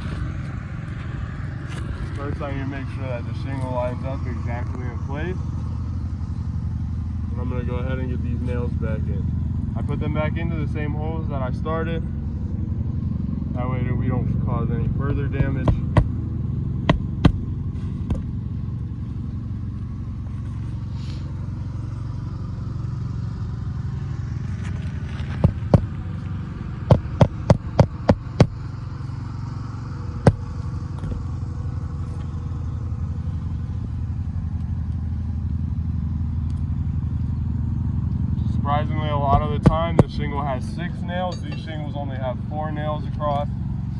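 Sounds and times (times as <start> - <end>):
low hum: 0.0 - 43.9
hammer striking nails: 15.4 - 16.2, 16.8 - 18.3, 25.4 - 26.0, 26.9 - 28.6.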